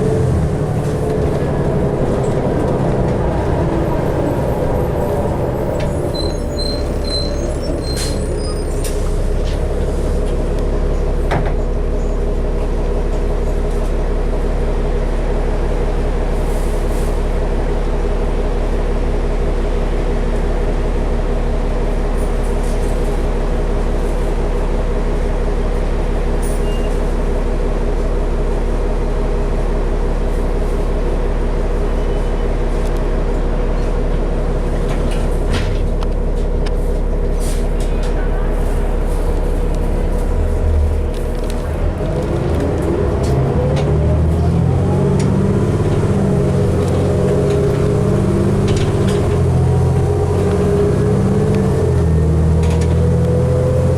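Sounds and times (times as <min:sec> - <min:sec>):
bus engine drone: 0:00.0 - 0:53.9
rattles and clicks: 0:45.2 - 0:49.6.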